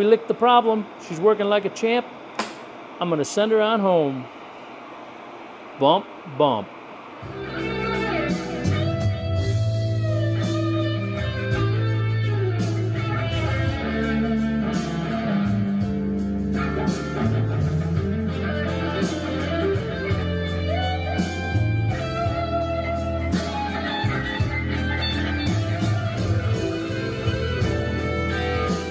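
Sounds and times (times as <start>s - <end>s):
electric guitar: 7.2s - 28.9s
bass guitar: 7.3s - 28.9s.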